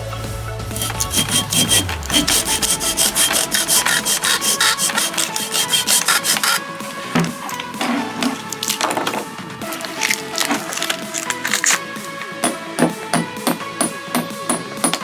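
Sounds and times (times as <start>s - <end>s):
hand sawing: 0.7s - 15.0s.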